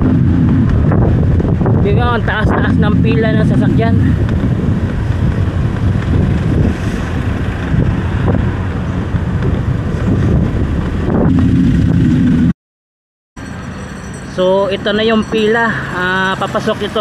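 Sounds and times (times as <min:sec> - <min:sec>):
road traffic noise: 0:00.0 - 0:12.5, 0:13.4 - 0:17.0
wind rumbling on microphone: 0:00.0 - 0:12.5.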